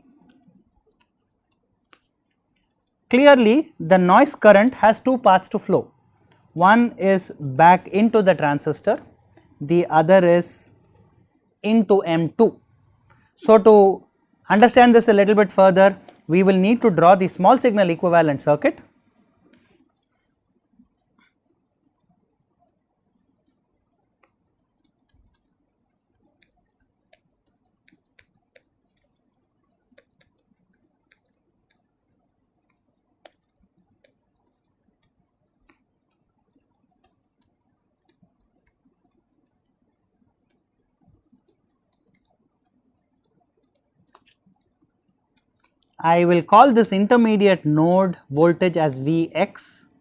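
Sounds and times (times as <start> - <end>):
pen clicking and tapping on paper: 0.1 - 3.1, 15.9 - 16.3, 20.8 - 46.0.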